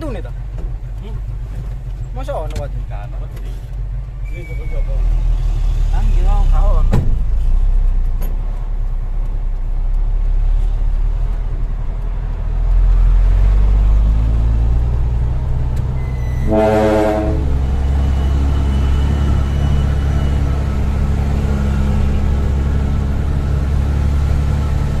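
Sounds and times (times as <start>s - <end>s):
truck diesel engine rumbling: 0.0s - 25.0s
truck air horn blast: 16.2s - 17.7s.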